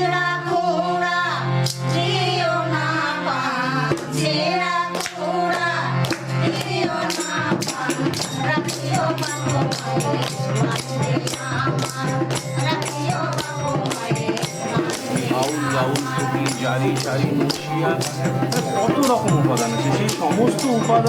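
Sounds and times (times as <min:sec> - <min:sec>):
percussion beat: 0:06.1 - 0:21.0
person singing: 0:14.5 - 0:21.0
low drone: 0:14.6 - 0:20.9.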